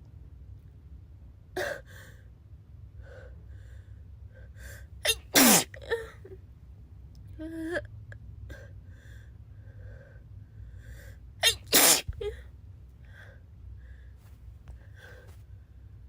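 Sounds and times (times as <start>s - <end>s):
girl sneezing: 5.1s - 5.8s, 11.4s - 12.4s.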